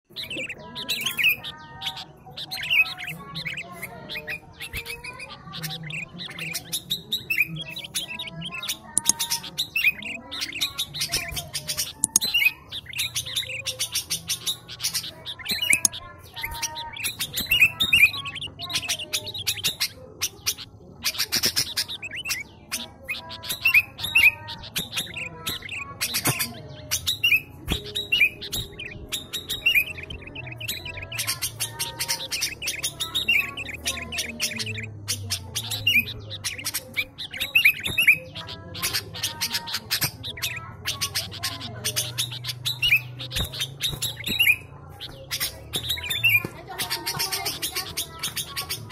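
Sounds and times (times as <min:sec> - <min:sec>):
bird chirping and whistling: 0:00.1 - 0:48.9
bird clicking rattles: 0:08.7 - 0:09.8, 0:10.4 - 0:12.4, 0:13.2 - 0:18.0.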